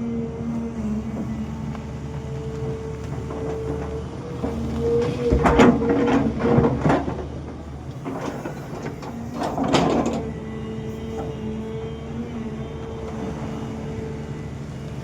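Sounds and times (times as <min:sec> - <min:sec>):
excavator diesel engine running: 0:00.0 - 0:15.0
bucket scraping and clattering: 0:03.4 - 0:10.2.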